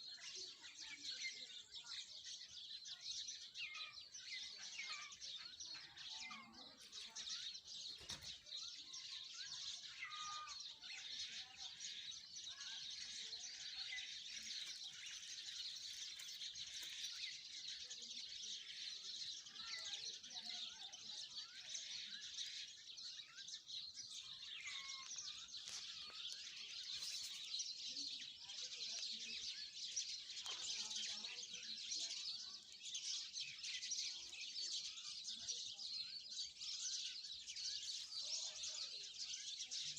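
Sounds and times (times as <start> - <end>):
small birds chirping chorus: 0.0 - 39.9.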